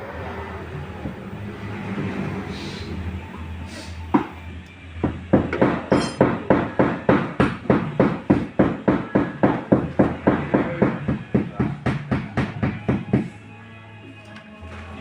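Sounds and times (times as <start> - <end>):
hammer beating car body panel: 5.0 - 13.3.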